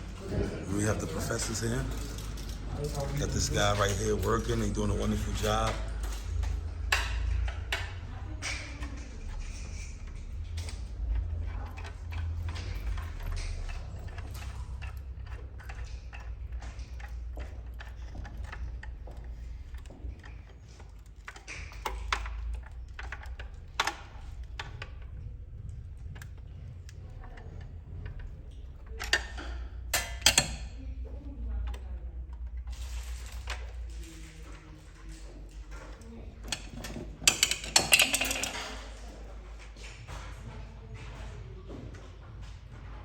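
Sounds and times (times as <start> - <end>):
clatter: 0.0 - 39.0
scraping: 0.0 - 40.0
steady low hum: 0.0 - 43.0
clinks and taps on hardware: 3.4 - 27.4, 28.0 - 30.8, 35.1 - 38.9.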